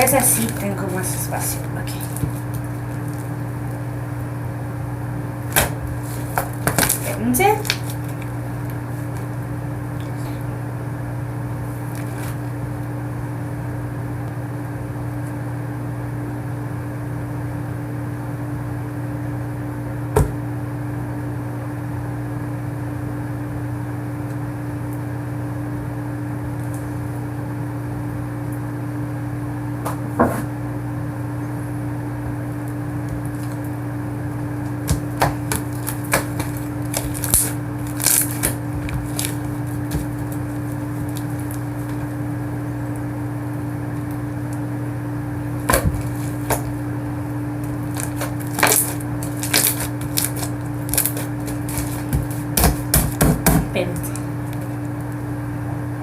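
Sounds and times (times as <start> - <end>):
low electrical hum: 0.0 - 56.0.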